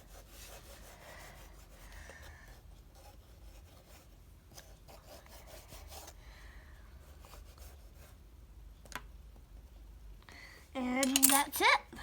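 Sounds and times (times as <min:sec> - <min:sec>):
hands rubbing modelling clay: 0:00.0 - 0:06.1.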